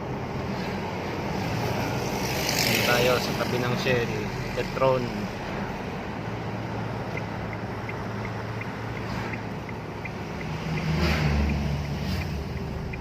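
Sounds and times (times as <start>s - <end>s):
engine and road noise: 0.0s - 13.0s
turn signal ticking: 6.2s - 13.0s.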